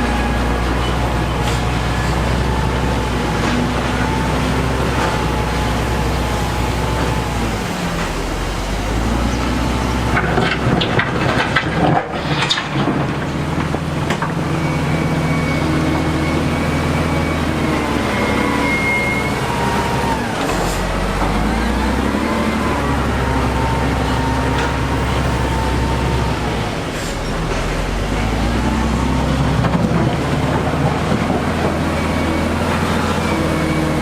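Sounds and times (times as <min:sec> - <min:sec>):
diesel engine of heavy machinery: 0:00.0 - 0:34.0.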